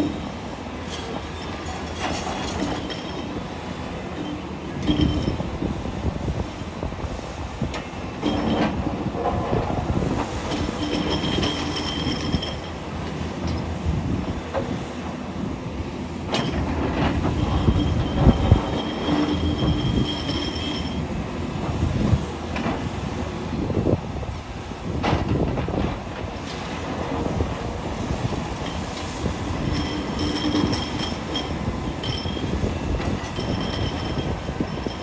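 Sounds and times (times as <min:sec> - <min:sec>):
high-pitched metallic squeal: 0:00.9 - 0:03.4, 0:17.4 - 0:21.1, 0:28.7 - 0:35.0.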